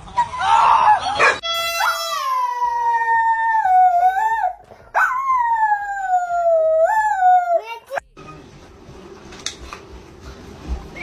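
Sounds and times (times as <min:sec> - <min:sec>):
dog howling: 0:01.8 - 0:07.6.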